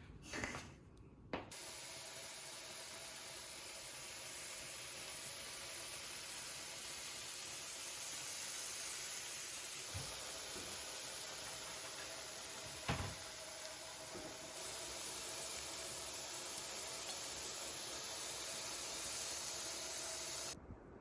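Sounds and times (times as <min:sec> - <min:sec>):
steady hiss: 0:01.5 - 0:20.6.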